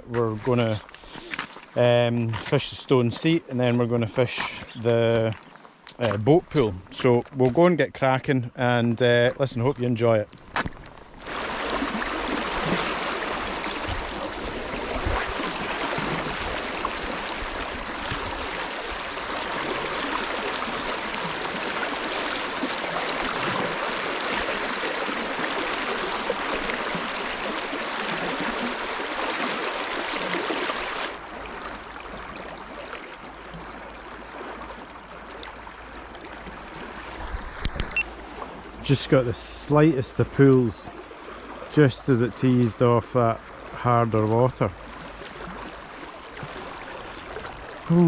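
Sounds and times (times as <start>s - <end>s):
river water flowing: 0.0s - 7.4s, 9.1s - 48.0s.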